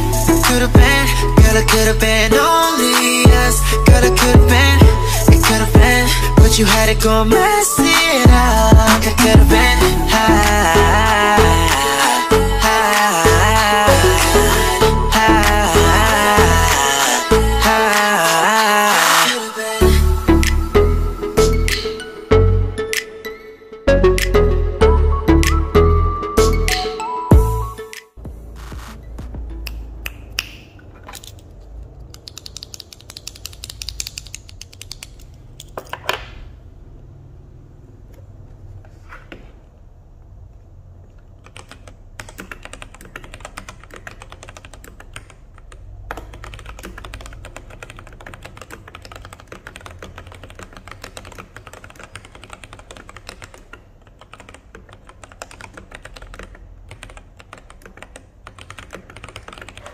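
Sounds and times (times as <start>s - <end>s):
typing on mechanical keyboard: 30.8s - 36.3s, 41.3s - 59.9s.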